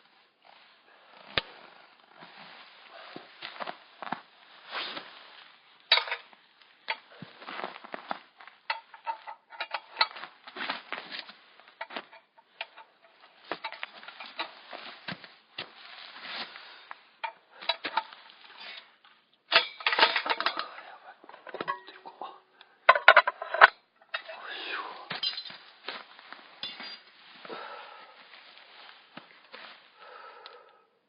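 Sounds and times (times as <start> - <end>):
firewood clattering: 5.9 - 16.2, 17.2 - 24.3, 25.1 - 27.1.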